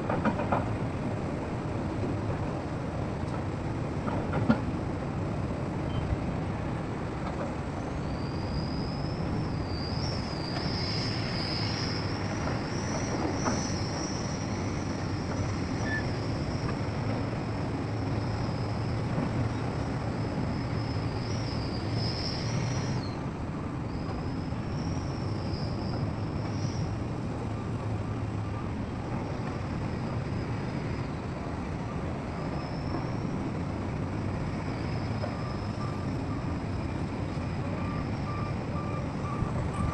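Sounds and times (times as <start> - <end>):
heavy machinery engine hum: 0.0 - 39.9
high-pitched squeal: 8.0 - 16.7.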